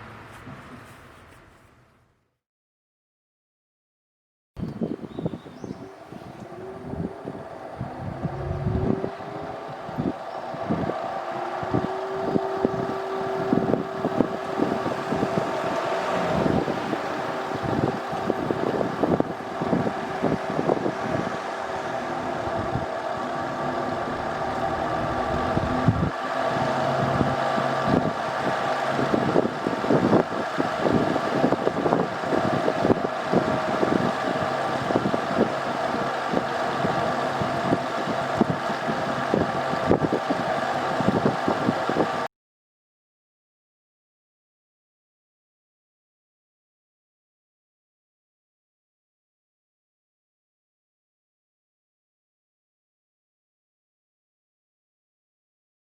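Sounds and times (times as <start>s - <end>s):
fan motor rattling: 4.6s - 42.3s
steady hum: 4.7s - 42.3s
steady tone: 5.9s - 37.0s.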